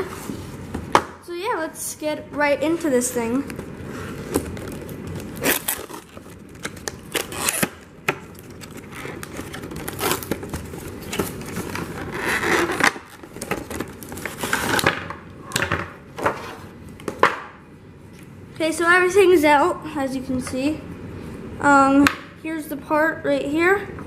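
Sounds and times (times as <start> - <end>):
packaging rustling and tearing: 3.8 - 14.9.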